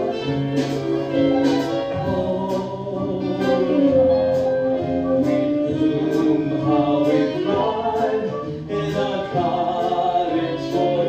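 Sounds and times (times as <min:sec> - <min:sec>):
musical ballad accompaniment: 0:00.0 - 0:11.0
person singing: 0:00.0 - 0:11.0.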